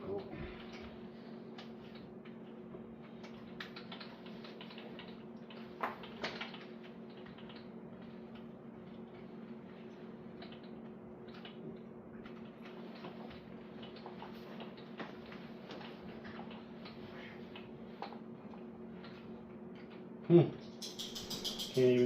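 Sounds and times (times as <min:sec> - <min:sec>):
steady low hum: 0:00.0 - 0:22.0
tools clicking and tapping: 0:20.6 - 0:22.0.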